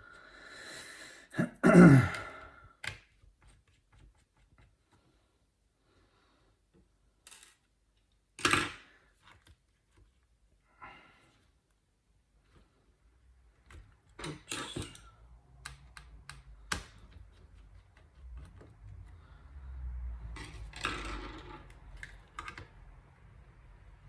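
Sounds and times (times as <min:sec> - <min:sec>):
person sighing: 0:00.5 - 0:02.7.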